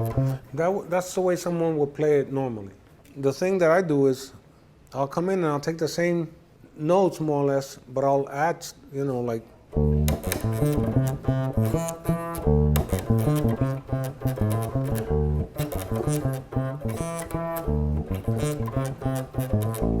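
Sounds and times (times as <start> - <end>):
electric bass guitar: 0.0 - 0.5, 9.7 - 20.0.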